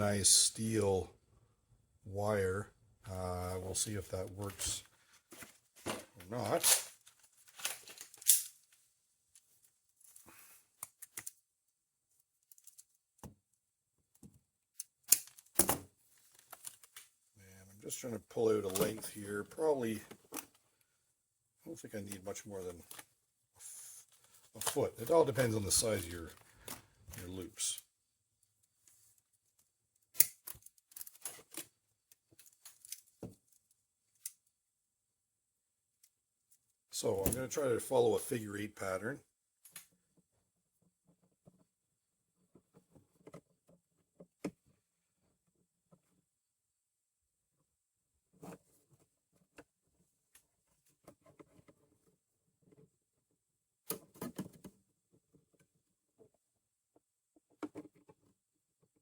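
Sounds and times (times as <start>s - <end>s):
wire clicks and rustles: 4.3s - 11.4s, 12.1s - 17.2s, 28.5s - 34.5s.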